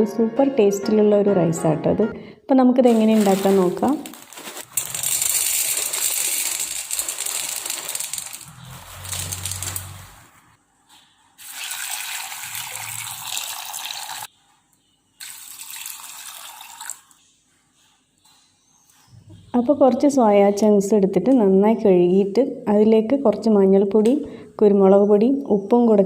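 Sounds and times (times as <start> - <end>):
water running and splashing in a bowl: 11.4 - 14.3, 15.2 - 17.2.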